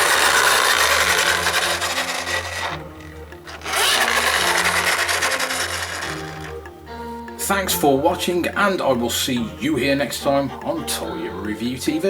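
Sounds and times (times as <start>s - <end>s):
loud rasping scraping: 0.0s - 6.6s
light background music: 0.0s - 12.0s.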